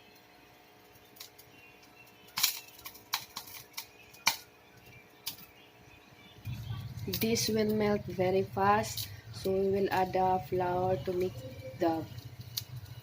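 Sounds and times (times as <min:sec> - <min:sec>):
butter popping in a pan: 0:02.2 - 0:04.4.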